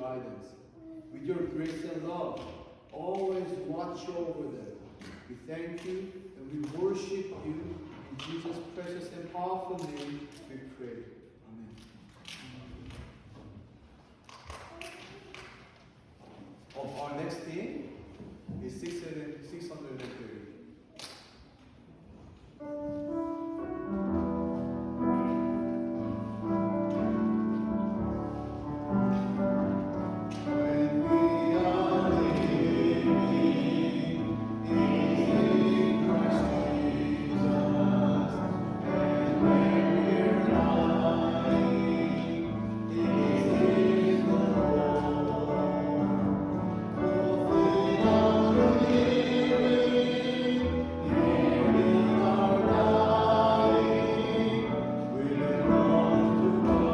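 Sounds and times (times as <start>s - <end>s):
congregation singing a hymn: 23.4s - 56.9s.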